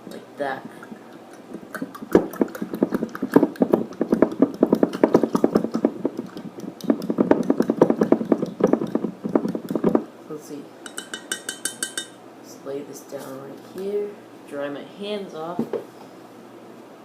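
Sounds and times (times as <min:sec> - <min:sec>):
water sloshing in a glass jar: 0:00.7 - 0:10.0
knocks and clinks against glass: 0:10.9 - 0:12.2.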